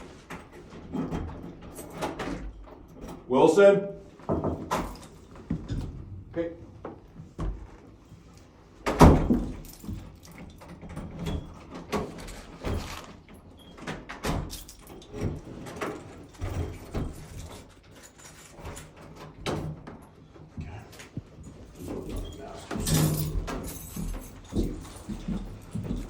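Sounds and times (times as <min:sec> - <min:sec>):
door shutting with a bang: 0:08.9 - 0:09.6.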